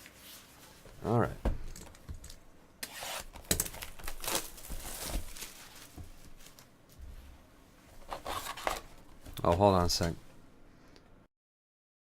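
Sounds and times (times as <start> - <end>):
card wrappers crinkling: 3.3 - 6.7.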